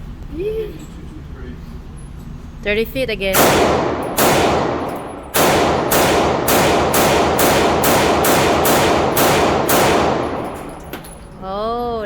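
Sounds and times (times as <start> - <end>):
pistol shots echoing: 3.4 - 11.4.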